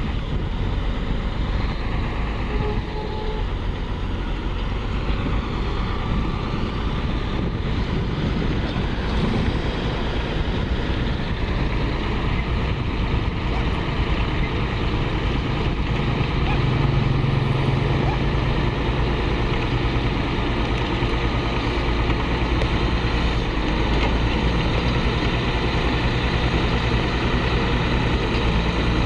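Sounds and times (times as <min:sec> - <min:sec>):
heavy machinery diesel engines running: 0:00.0 - 0:29.0.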